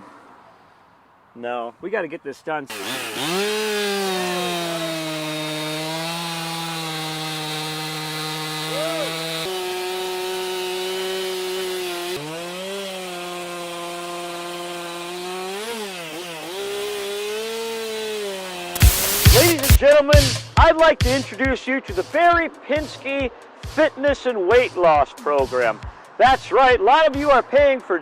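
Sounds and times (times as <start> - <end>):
chainsaw cutting wood: 2.7 - 19.8.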